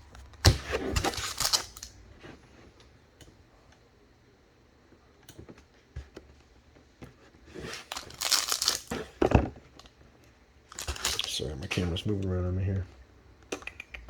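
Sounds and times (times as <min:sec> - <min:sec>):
foil wrapper crinkling and tearing: 0:00.9 - 0:02.0, 0:07.6 - 0:09.1, 0:10.7 - 0:11.9.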